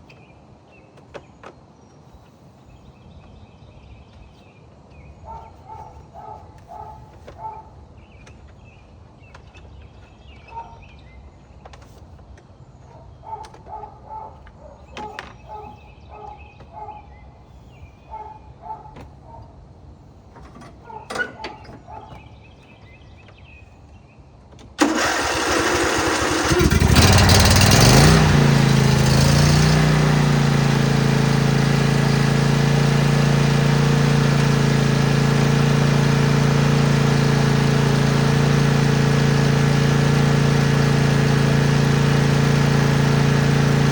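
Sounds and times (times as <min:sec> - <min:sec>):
lawnmower engine starting and running: 0:20.3 - 0:22.6, 0:24.6 - 0:43.9.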